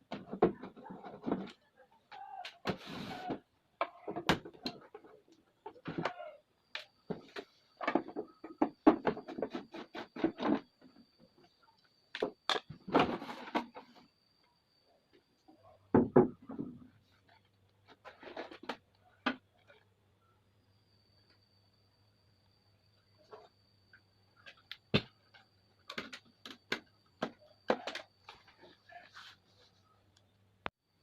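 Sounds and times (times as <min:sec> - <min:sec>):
faint high steady tone: 0:19.0 - 0:25.9.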